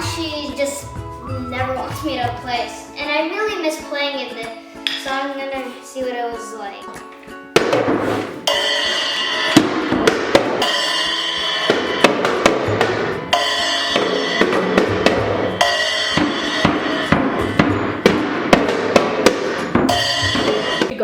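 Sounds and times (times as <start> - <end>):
drum kit beat: 0.0 - 2.9, 7.5 - 21.0
sustained melodic instruments: 8.4 - 21.0.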